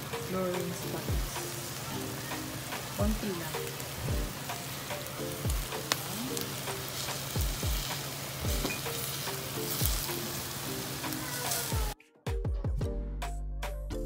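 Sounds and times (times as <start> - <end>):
chicken sizzling in hot oil: 0.0 - 12.0
music with thumping beat: 0.2 - 1.6, 2.7 - 4.6, 5.4 - 10.2, 11.7 - 14.0.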